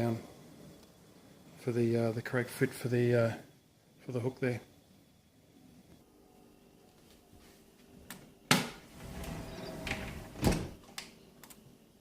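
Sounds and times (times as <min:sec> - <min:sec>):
door rolling on track: 0:08.9 - 0:10.8.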